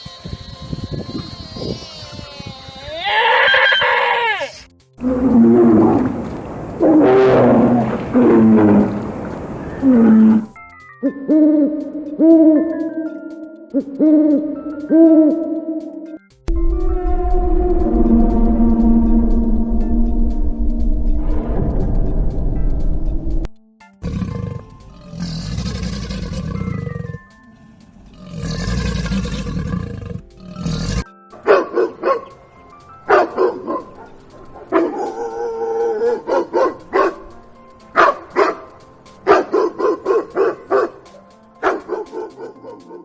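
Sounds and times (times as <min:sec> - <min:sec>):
rough animal calls: 0:00.0 - 0:10.6, 0:24.0 - 0:31.1
background music: 0:00.1 - 0:43.0
dog barking: 0:31.4 - 0:32.3, 0:33.1 - 0:37.3, 0:38.0 - 0:43.0.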